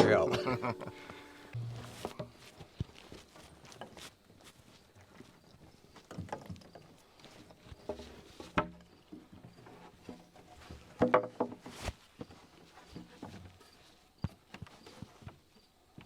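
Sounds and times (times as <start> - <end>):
tools and materials knocking: 1.6 - 2.3.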